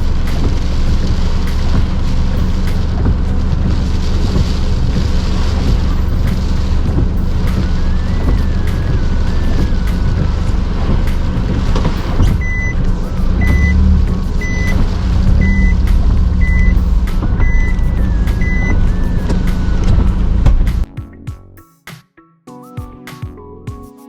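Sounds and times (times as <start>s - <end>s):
strong wind buffeting microphone: 0.0s - 20.9s
short high electronic beep: 15.4s - 19.4s.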